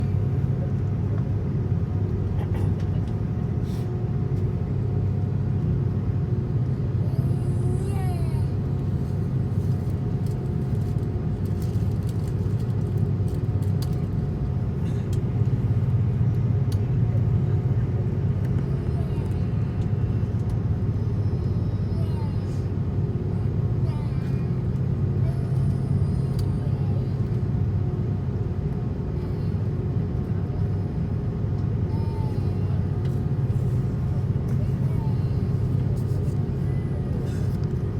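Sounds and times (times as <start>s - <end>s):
airliner cabin rumble: 0.0s - 37.9s
faint engine tones: 0.0s - 37.9s.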